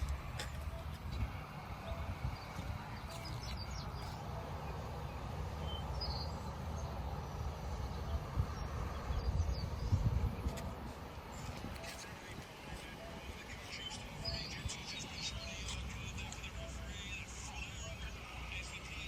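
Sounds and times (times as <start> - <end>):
faint bird chirps: 7.8 - 19.0.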